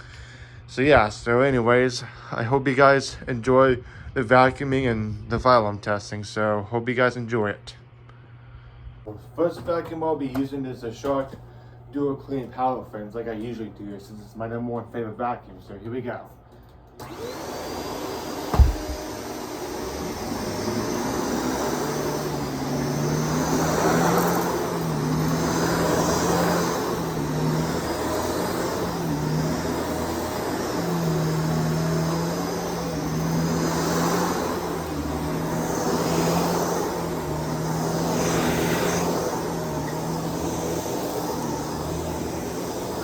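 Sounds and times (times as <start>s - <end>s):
vacuum cleaner running: 16.9s - 43.0s
sharp thump: 18.5s - 19.1s.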